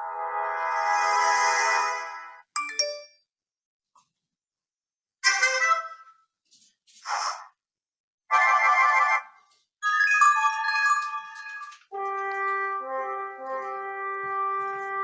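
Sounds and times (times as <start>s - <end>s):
melodic chime: 9.8s - 11.8s.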